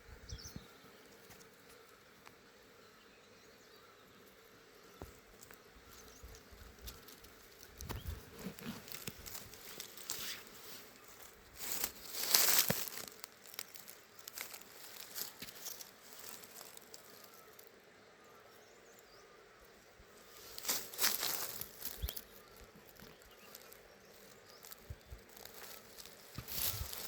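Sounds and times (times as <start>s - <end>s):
rustling: 5.3s - 17.7s, 20.2s - 27.0s.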